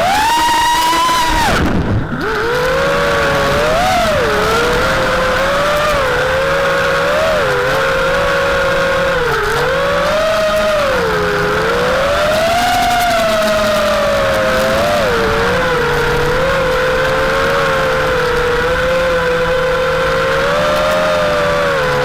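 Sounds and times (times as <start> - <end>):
quadcopter motors whining: 0.0 - 22.0.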